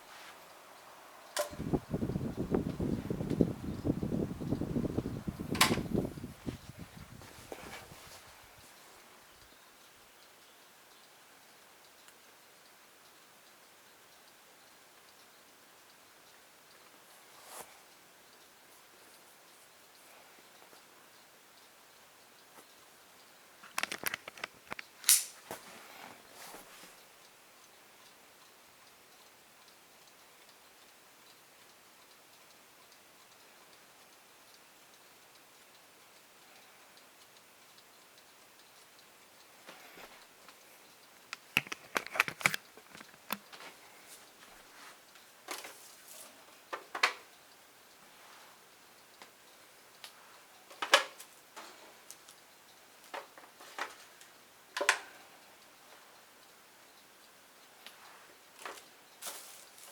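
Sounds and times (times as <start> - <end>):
table fan clicks and knocks: 1.4 - 6.8, 23.7 - 25.3, 41.3 - 43.6.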